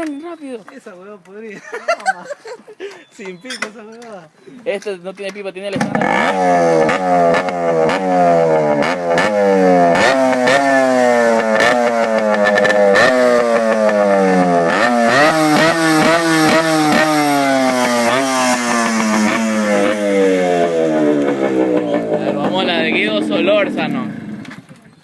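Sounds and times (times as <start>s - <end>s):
exhaust cracks: 5.4s - 24.9s
motorcycle engine revving: 5.7s - 24.8s.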